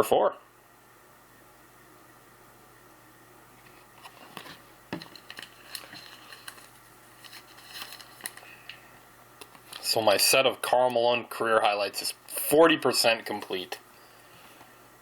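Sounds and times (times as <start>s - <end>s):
cards being handled and sorted: 3.7s - 8.8s.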